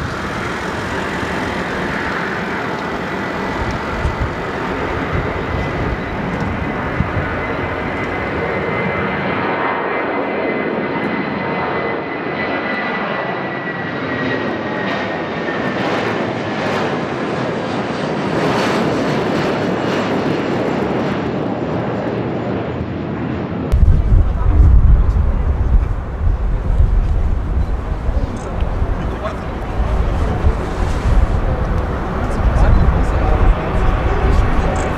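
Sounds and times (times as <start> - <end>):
high engine whine: 0.0 - 11.4, 23.7 - 34.9
jet engines running: 0.0 - 34.9.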